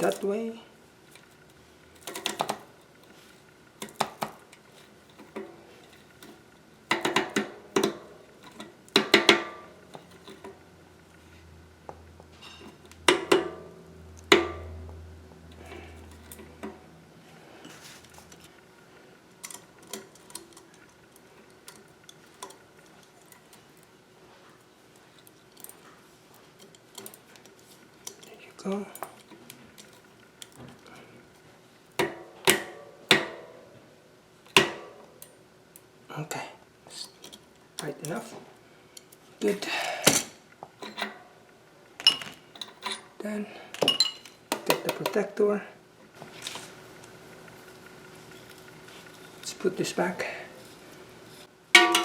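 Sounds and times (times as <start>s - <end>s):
metal bicycle parts clinking: 19.4s - 23.9s, 39.8s - 41.2s, 42.0s - 43.2s, 43.8s - 44.4s, 51.8s - 52.0s.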